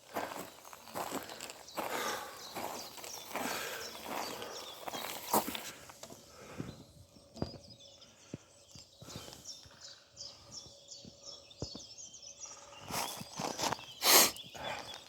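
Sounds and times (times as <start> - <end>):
walking footsteps: 0.0 - 6.2
small birds chirping: 0.0 - 15.0.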